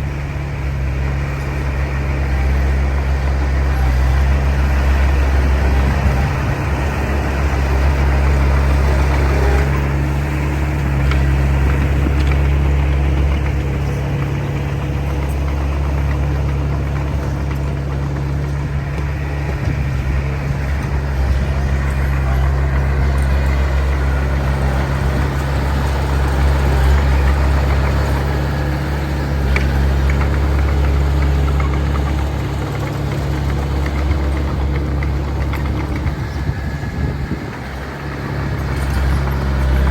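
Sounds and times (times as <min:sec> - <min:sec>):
heavy diesel engine running: 0:00.0 - 0:39.9.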